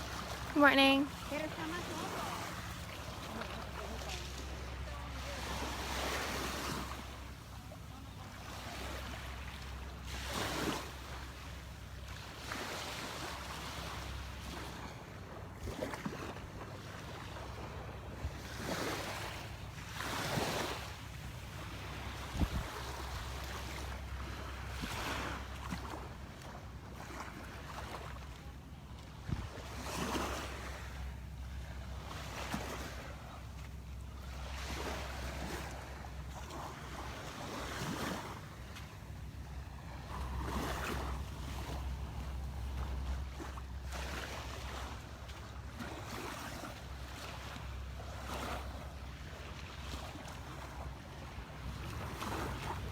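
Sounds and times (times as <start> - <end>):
small waves on sandy beach: 0.0 - 52.9
wind rumble on microphone: 14.6 - 27.4, 29.0 - 30.4.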